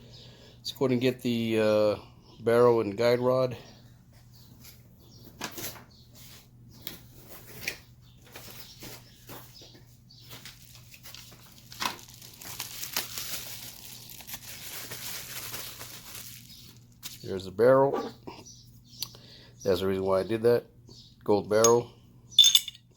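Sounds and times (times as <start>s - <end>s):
packaging rustling and crinkling: 7.3s - 17.2s.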